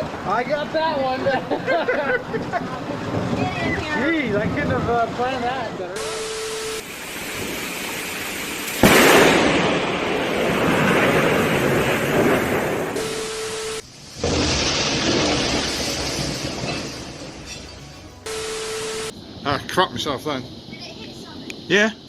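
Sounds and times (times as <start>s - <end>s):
rumbling thunder: 2.3s - 5.8s, 6.9s - 13.1s, 14.0s - 17.5s
sharp thunderclap: 2.9s - 5.2s, 6.9s - 13.1s, 14.1s - 17.5s.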